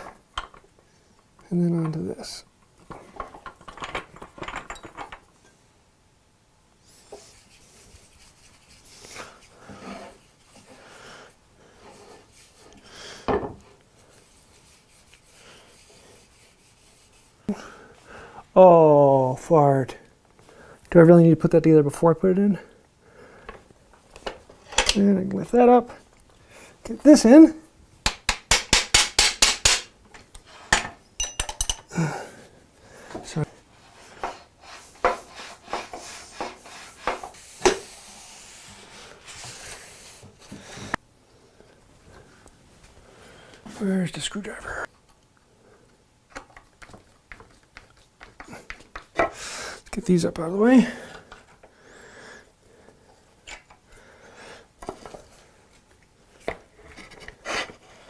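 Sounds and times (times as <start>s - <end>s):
rubbing and scraping: 6.9s - 10.8s, 14.0s - 17.4s, 33.8s - 41.0s
wooden parts rubbing and scraping: 33.2s - 41.0s.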